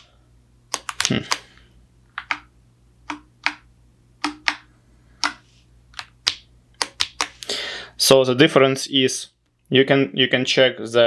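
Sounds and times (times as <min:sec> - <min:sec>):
mechanical keyboard key clicks: 0:00.7 - 0:01.4, 0:04.2 - 0:04.6, 0:06.0 - 0:07.4.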